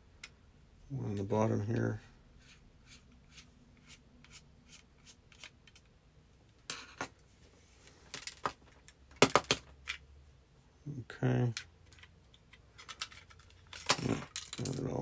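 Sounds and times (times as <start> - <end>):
plastic parts clicking and knocking: 8.1 - 10.0, 11.5 - 15.0.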